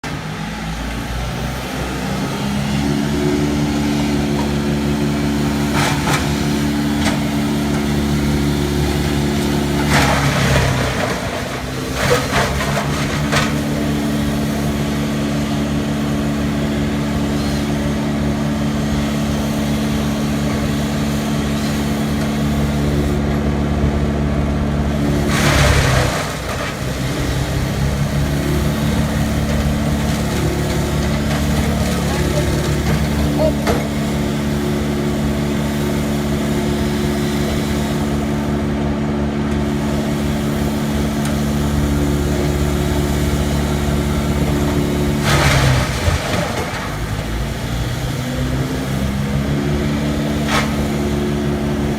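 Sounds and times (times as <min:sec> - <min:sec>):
tree shredder engine running: 0:00.0 - 0:51.9
shredder noise bursts: 0:24.9 - 0:33.2, 0:39.8 - 0:48.0.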